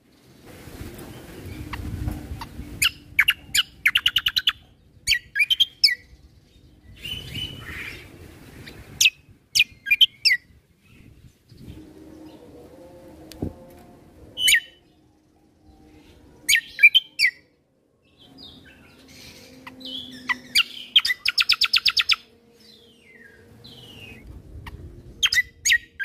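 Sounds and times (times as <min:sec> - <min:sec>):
bird singing high chirps: 0:02.4 - 0:08.1, 0:09.0 - 0:12.5, 0:14.4 - 0:26.0
low rumble: 0:22.3 - 0:26.0.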